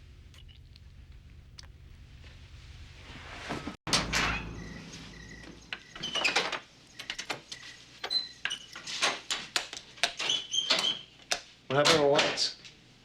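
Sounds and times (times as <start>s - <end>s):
short squeaks or creaks: 10.1s - 11.1s.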